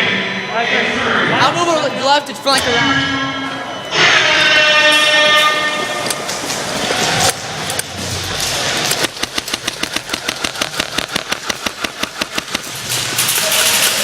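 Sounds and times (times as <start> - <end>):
airsoft gun rapid fire: 8.8 - 13.9.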